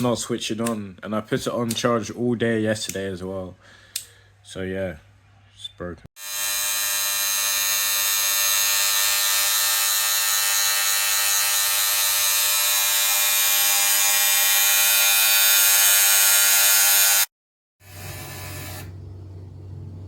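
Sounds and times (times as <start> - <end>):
electric hair clipper buzzing: 6.2 - 18.9.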